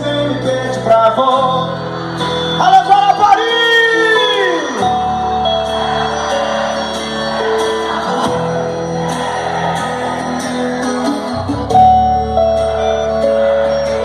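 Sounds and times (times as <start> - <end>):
keyboard-like chords: 0.0 - 14.0.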